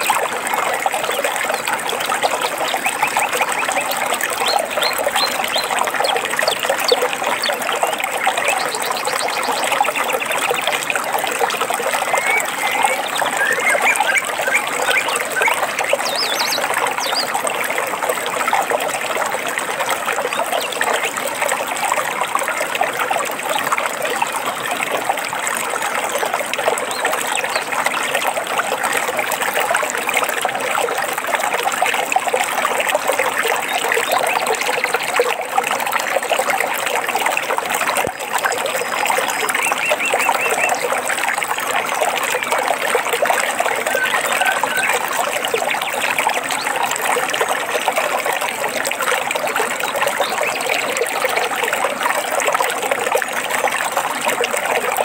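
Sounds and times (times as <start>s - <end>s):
stream babbling: 0.0s - 55.0s
bird chirps: 12.0s - 17.3s.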